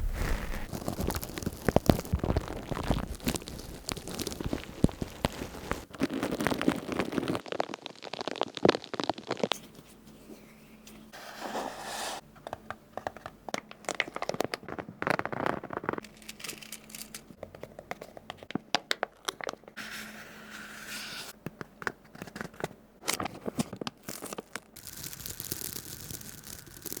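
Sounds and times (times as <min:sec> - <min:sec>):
crinkling and crunching: 0:00.0 - 0:09.8, 0:13.1 - 0:19.8, 0:22.2 - 0:27.0.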